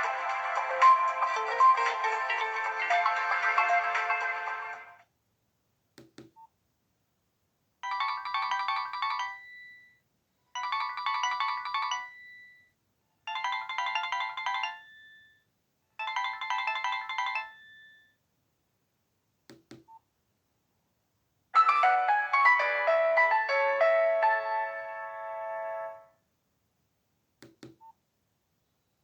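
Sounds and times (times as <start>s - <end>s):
phone ringtone: 0.0s - 5.0s, 7.8s - 10.0s, 10.6s - 12.7s, 13.3s - 15.4s, 16.0s - 18.1s, 21.6s - 26.1s.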